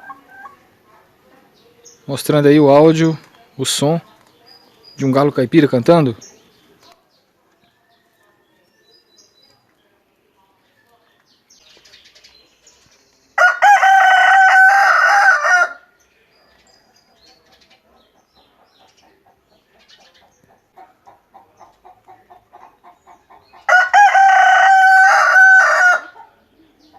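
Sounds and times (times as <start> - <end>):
rooster crowing: 13.4 - 15.9, 23.7 - 26.3.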